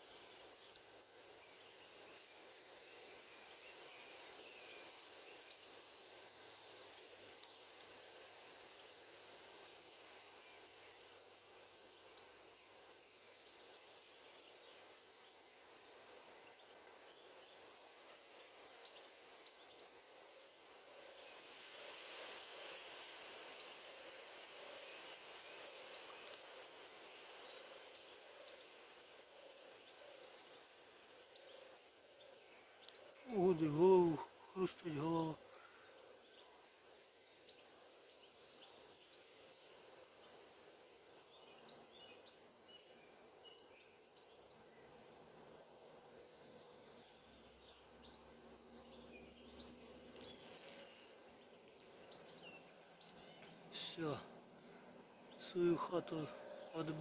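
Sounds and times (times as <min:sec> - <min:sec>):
buzz of flying insects: 0:00.0 - 0:57.0
faint bird chirps: 0:00.0 - 0:57.0
brief hiss: 0:21.1 - 0:30.6, 0:50.1 - 0:54.1
small high chirps: 0:41.4 - 0:57.0
bees buzzing: 0:50.1 - 0:53.0.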